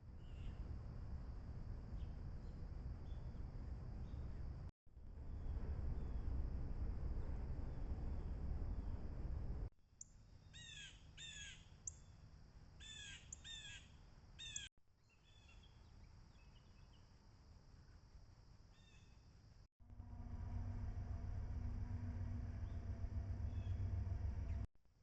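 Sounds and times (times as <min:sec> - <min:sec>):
low rumbling noise: 0:02.9 - 0:09.7, 0:19.8 - 0:24.7.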